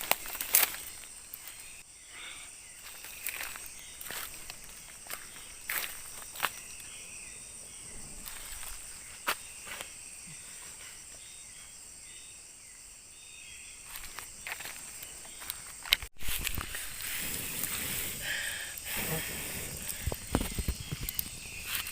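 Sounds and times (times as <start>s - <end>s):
insects droning: 0.0s - 21.9s.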